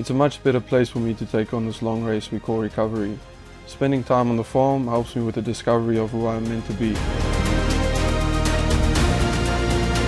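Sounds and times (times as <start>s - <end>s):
background music with steady beat: 0.0s - 10.0s.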